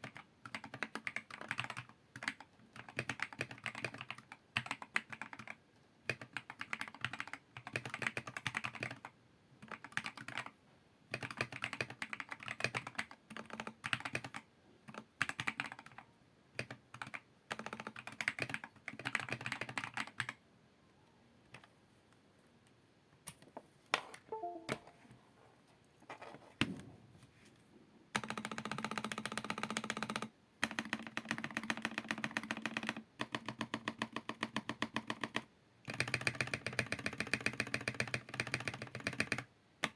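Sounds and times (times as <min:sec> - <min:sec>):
mechanical keyboard typing: 0:00.0 - 0:16.0, 0:16.6 - 0:20.4, 0:28.1 - 0:39.9.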